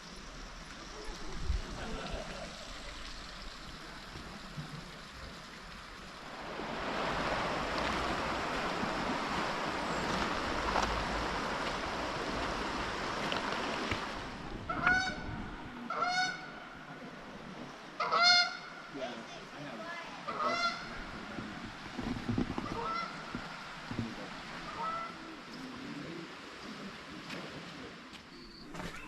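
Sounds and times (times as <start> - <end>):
spring water rushing: 0.0 - 18.0, 18.6 - 28.1
goose honking: 14.7 - 15.3, 15.9 - 16.6, 18.0 - 18.7, 20.3 - 20.9, 24.7 - 25.2.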